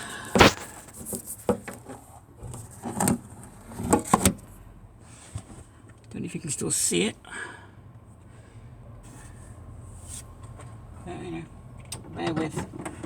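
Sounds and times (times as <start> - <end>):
handling knocks and clunks: 0.3 - 3.2, 11.8 - 13.0.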